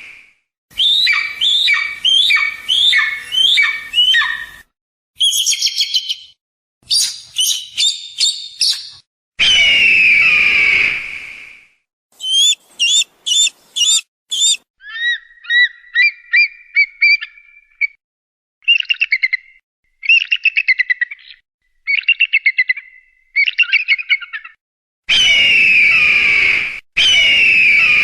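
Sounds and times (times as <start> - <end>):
eagle yelping and chattering: 12.2 - 15.7.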